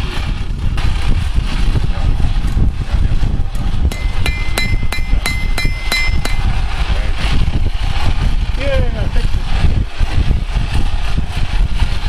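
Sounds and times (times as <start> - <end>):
hammer striking iron on anvil: 3.9 - 6.6.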